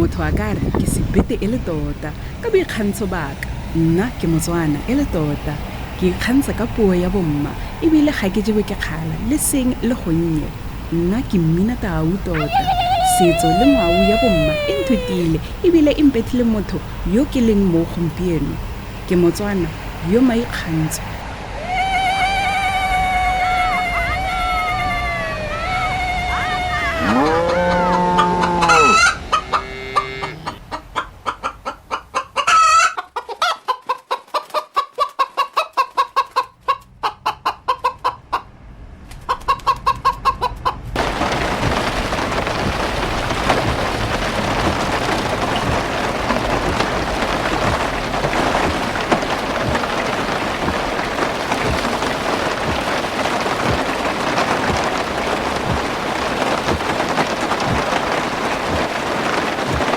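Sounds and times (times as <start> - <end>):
steady rain hiss: 0.0 - 29.6, 41.0 - 59.9
chickens clucking: 12.3 - 15.4, 27.0 - 38.4
rooster crowing: 12.4 - 15.4, 21.6 - 30.6.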